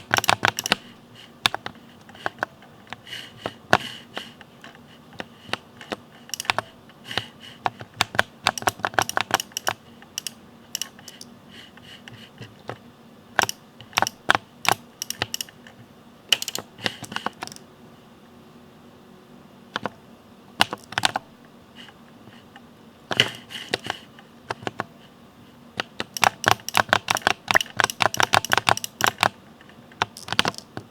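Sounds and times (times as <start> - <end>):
mechanical keyboard typing: 0.0 - 3.0, 3.7 - 11.3, 13.4 - 15.7, 16.3 - 17.6, 20.6 - 21.3, 25.8 - 29.4, 30.0 - 30.9.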